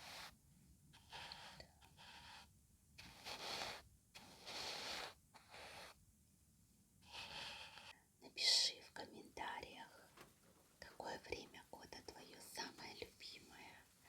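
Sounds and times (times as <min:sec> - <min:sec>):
soft close breathing: 0:07.0 - 0:14.0.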